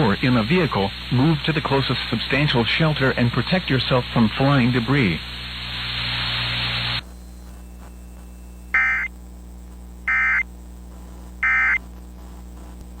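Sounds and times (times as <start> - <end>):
warbling digital tone bursts: 8.8 - 9.1, 10.1 - 10.4, 11.4 - 11.8.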